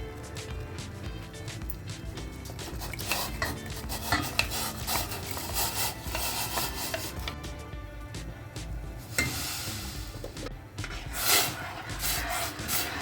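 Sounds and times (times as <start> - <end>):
light background music: 0.0 - 13.0
spoon scraping a cooking pot: 2.4 - 7.4, 9.1 - 13.0.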